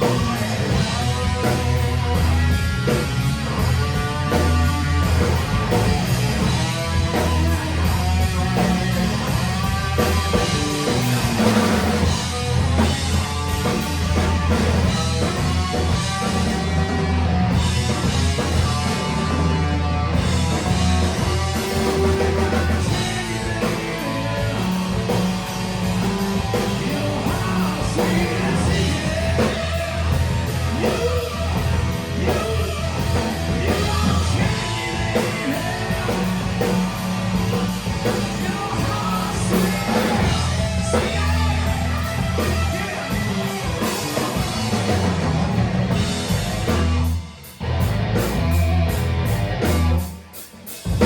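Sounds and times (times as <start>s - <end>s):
bass: 0.0s - 51.0s
drum kit: 0.0s - 51.0s
electric guitar: 0.0s - 51.0s
person singing: 21.4s - 25.1s, 26.5s - 36.8s, 38.0s - 45.0s.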